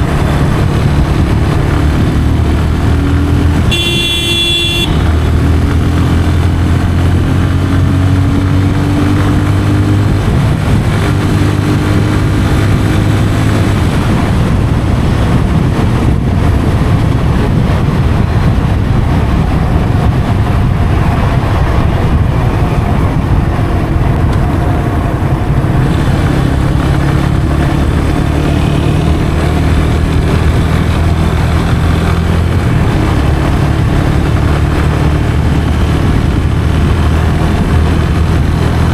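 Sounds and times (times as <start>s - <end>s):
motorcycle engine accelerating: 0.0s - 38.9s.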